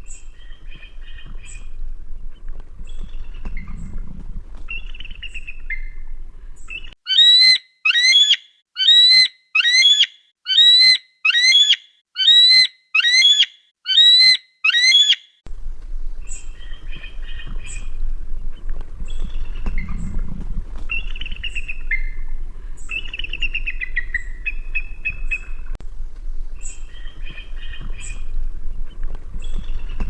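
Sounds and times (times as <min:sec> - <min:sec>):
eagle calling: 0:07.1 - 0:15.3
faint bird calls outdoors: 0:07.1 - 0:15.4.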